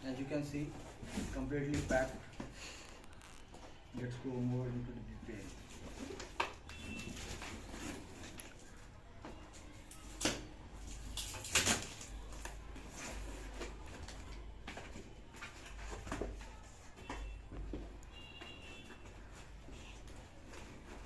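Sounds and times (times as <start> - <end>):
packaging rustling: 0.6 - 3.8.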